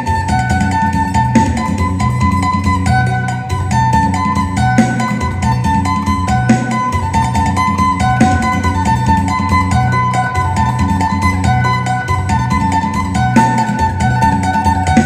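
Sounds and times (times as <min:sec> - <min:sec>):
plucked lute melody: 0:00.0 - 0:15.0.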